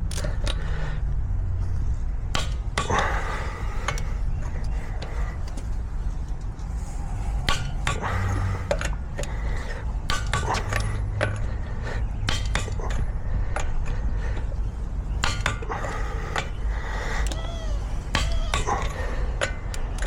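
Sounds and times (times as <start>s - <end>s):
low rumble: 3.2s - 10.0s
metal tools clinking: 17.4s - 20.0s.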